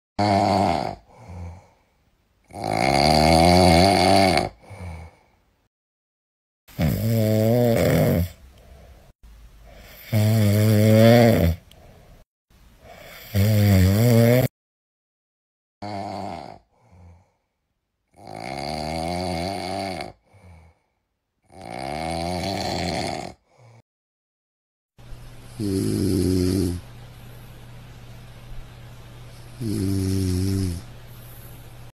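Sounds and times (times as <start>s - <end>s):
person snoring loudly: 0.2s - 1.8s, 2.5s - 5.3s, 6.7s - 8.4s, 9.7s - 11.6s, 12.8s - 14.5s, 15.8s - 17.4s, 18.1s - 20.8s, 21.4s - 23.8s, 25.5s - 26.8s, 29.6s - 30.9s
soft breaths: 8.4s - 10.1s, 11.6s - 13.3s, 30.7s - 31.9s.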